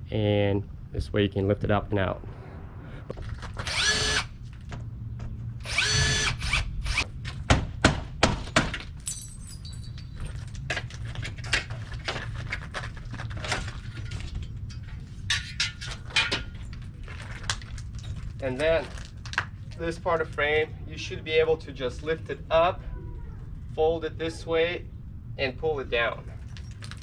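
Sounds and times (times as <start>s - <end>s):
cordless drill running: 3.6s - 4.3s, 5.6s - 7.0s.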